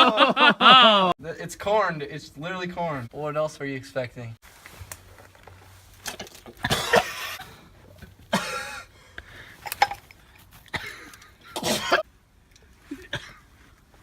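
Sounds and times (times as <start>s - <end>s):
man coughing hard: 6.6s - 7.6s, 8.3s - 8.9s, 10.7s - 12.0s, 12.9s - 13.5s.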